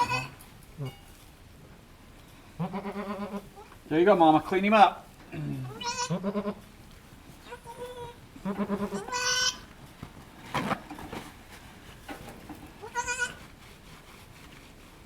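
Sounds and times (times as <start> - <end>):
goat kid bleating: 0.0 - 1.0, 2.6 - 3.8, 5.6 - 6.7, 7.4 - 9.7, 12.8 - 13.5.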